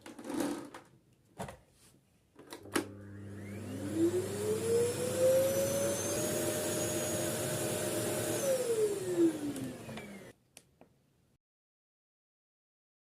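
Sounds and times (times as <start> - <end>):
vacuum cleaner motor whine: 2.4 - 10.3.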